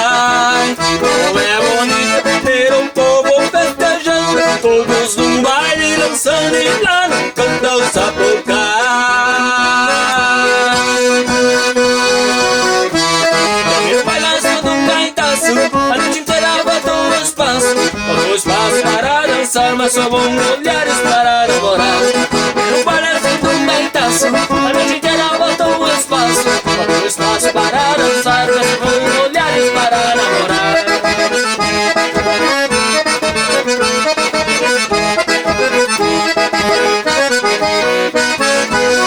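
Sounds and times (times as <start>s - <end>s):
accordion playing: 0.0s - 39.0s
steady dance beat: 9.8s - 39.0s.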